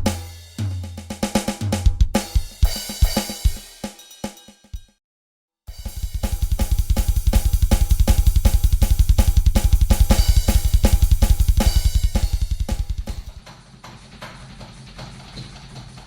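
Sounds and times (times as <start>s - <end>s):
rapid double bass drum kicks: 0.0s - 3.7s, 5.7s - 13.4s
snare or tom hits: 0.0s - 4.0s, 5.8s - 13.5s.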